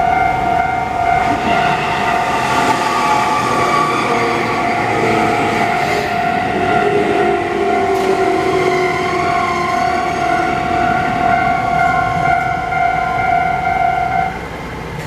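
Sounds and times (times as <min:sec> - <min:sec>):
electric train passing: 0:00.0 - 0:15.0.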